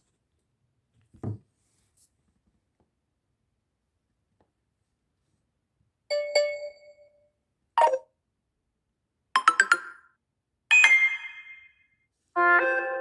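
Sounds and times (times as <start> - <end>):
phone alert tones: 7.8 - 8.0, 9.4 - 10.0.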